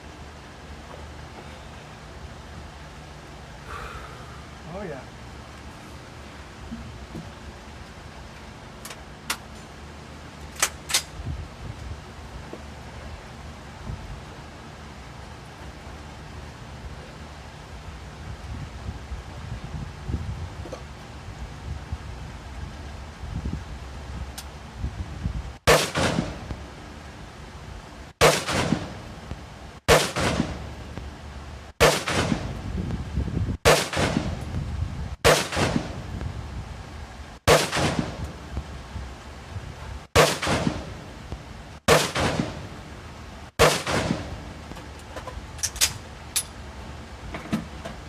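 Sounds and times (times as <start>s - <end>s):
gunshots with echo: 29.9s - 30.6s.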